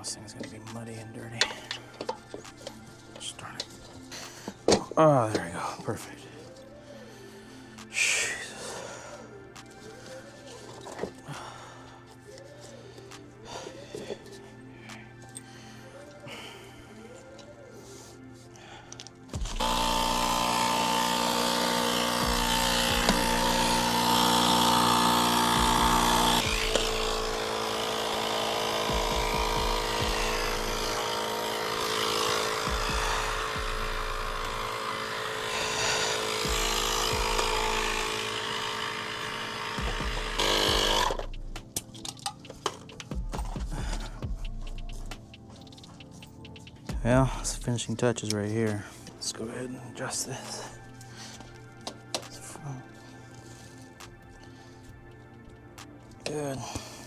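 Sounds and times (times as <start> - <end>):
air compressor running with hiss: 19.4 - 41.4.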